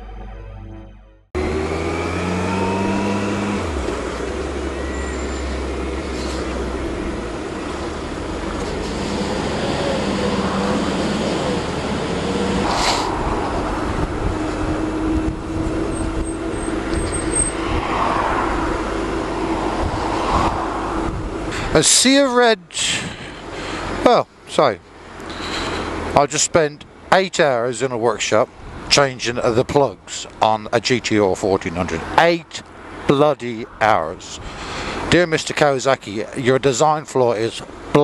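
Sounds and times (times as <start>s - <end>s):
motorcycle engine: 1.4s - 22.0s
wind and road noise: 1.4s - 38.0s.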